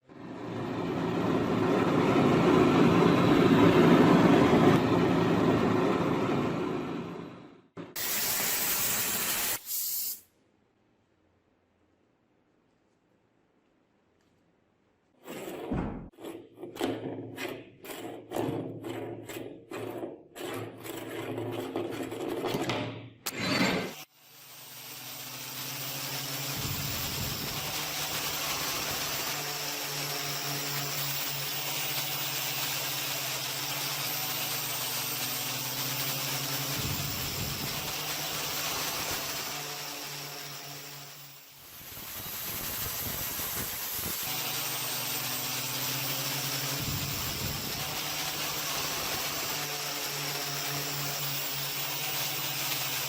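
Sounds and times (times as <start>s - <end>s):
tool motor running with hiss: 8.0s - 10.3s, 23.3s - 53.0s.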